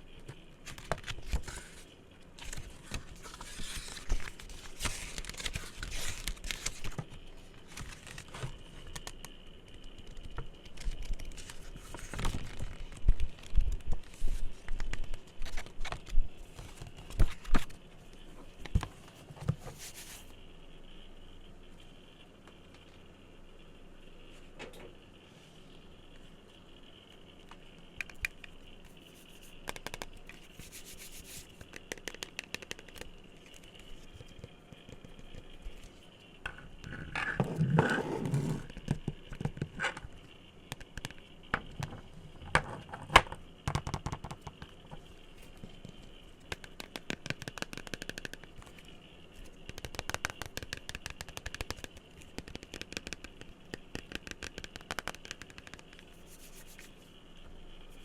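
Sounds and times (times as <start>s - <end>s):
fingers tapping on objects: 31.7s - 33.1s, 46.5s - 48.5s, 49.7s - 56.0s.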